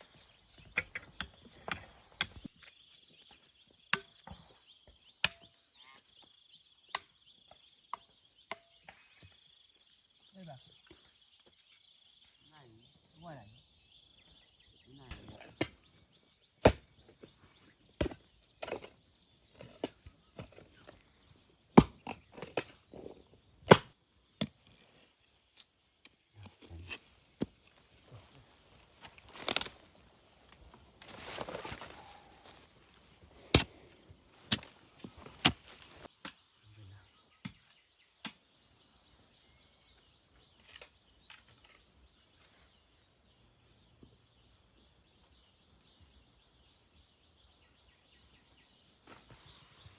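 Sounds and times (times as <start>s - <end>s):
insects buzzing: 24.8s - 36.1s
sharp knocks and cracks: 29.0s - 29.9s, 34.4s - 36.1s.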